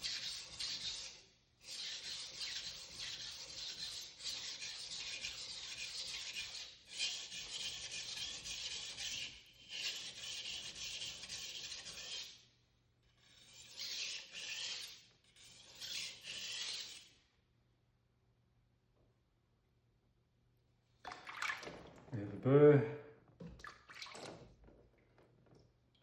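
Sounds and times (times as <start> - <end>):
knife grinding on whetstone: 0.0 - 12.4, 13.3 - 17.1.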